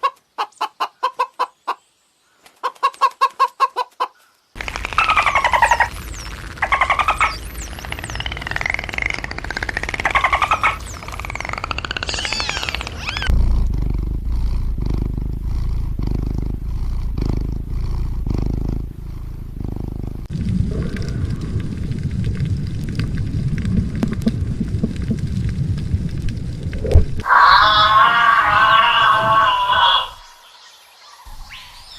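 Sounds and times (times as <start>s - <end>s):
low animal growls: 13.1s - 22.2s.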